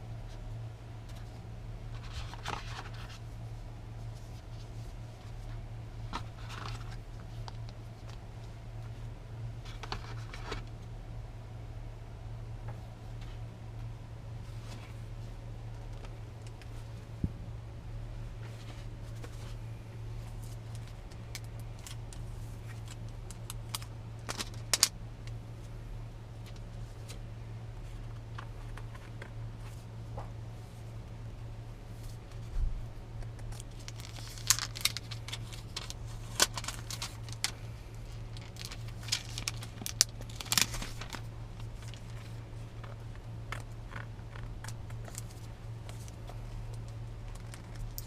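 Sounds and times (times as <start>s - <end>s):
steady low hum: 0.0s - 48.0s
packaging rustling and clicking: 33.3s - 37.6s, 38.2s - 48.0s.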